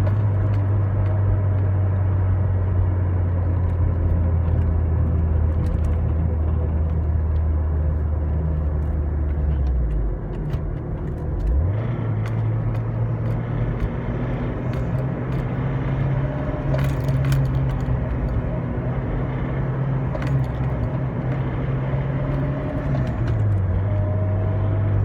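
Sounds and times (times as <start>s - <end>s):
faint irregular engine ticks: 0.0s - 24.0s
turbocharged car engine running: 0.0s - 25.0s.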